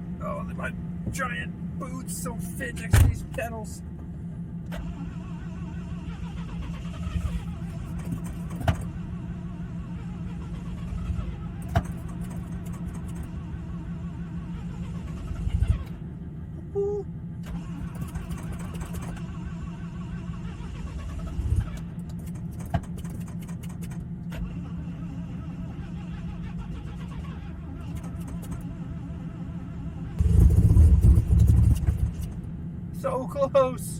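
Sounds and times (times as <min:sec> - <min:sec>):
engine drone: 0:00.0 - 0:33.9
engine cranking: 0:04.6 - 0:13.4, 0:14.2 - 0:16.1, 0:17.4 - 0:29.3, 0:30.1 - 0:32.5
sharp clicks and knocks: 0:07.9 - 0:08.9, 0:11.6 - 0:13.3, 0:21.5 - 0:24.4.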